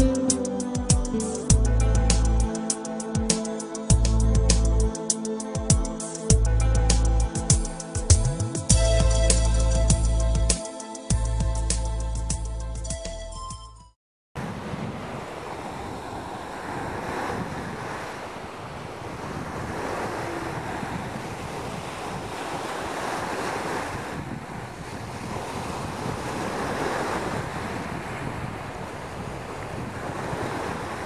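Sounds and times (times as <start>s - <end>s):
music: 0.0s - 14.0s
sea waves washing onto beach: 14.4s - 31.0s
wind rumbling on microphone: 14.4s - 31.0s.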